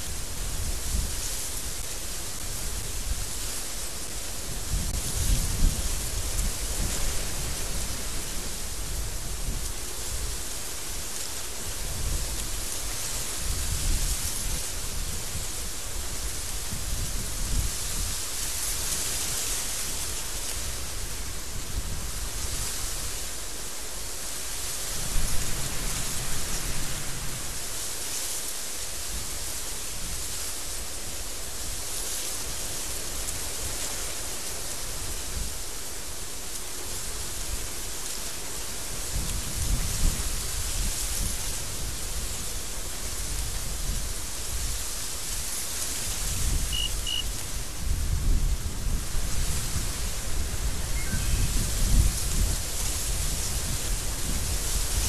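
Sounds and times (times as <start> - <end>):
wind buffeting microphone: 0.0 - 23.4, 38.8 - 55.0
strong wind hissing: 0.0 - 55.0
short high peeps: 46.7 - 47.3, 51.0 - 51.6.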